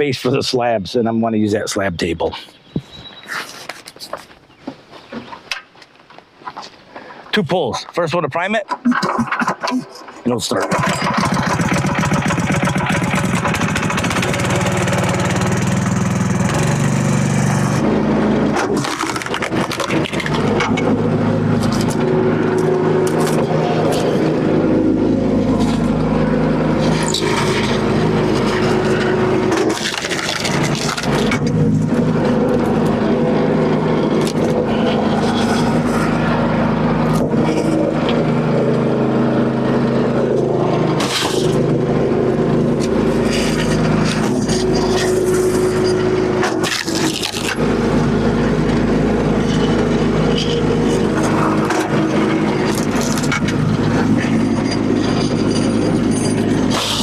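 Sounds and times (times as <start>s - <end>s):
small gas engine running: 9.0s - 57.0s
logs cracking as split: 18.6s - 20.4s, 29.5s - 31.5s.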